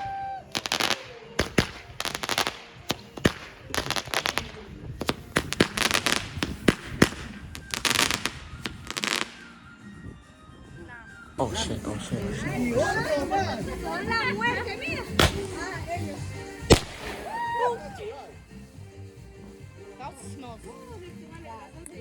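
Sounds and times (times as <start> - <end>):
fireworks bangs and crackles: 0.0 - 9.6, 15.1 - 17.6.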